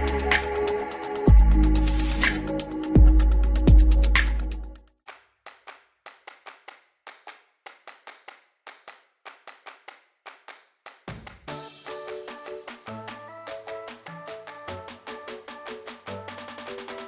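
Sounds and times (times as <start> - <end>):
sharp percussive claps: 5.0 - 17.0.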